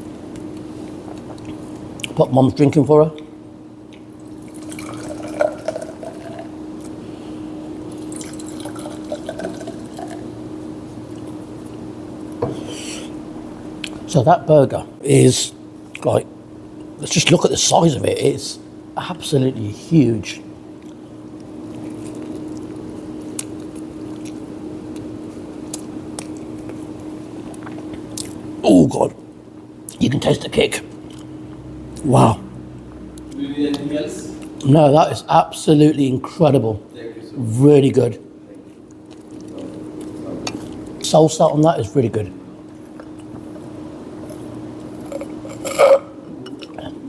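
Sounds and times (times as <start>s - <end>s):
steady low hum: 0.0s - 47.0s
drink poured into a glass: 4.5s - 6.5s, 8.1s - 10.2s
biting and chewing a burger: 20.8s - 28.4s, 38.8s - 41.0s.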